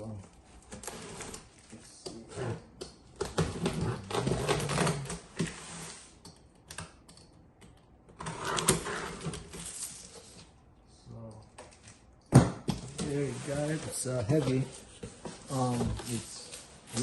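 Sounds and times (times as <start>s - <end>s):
cardboard box rustling and scraping: 13.0s - 17.0s.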